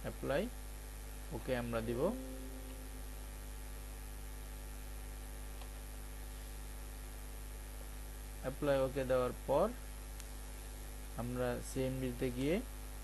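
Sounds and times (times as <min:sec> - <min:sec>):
electrical mains hum: 0:00.0 - 0:13.0
faint click: 0:10.1 - 0:10.4.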